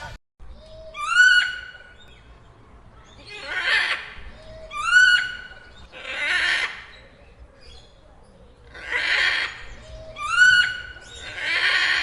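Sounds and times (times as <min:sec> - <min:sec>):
bird harsh raspy call: 0:08.7 - 0:12.0.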